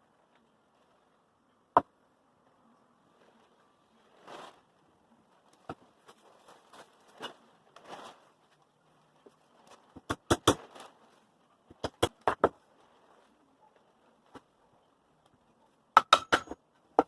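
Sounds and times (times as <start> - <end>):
handling and rustling: 3.0 - 11.8, 12.5 - 15.9
sharp knocks on wood: 16.0 - 17.0.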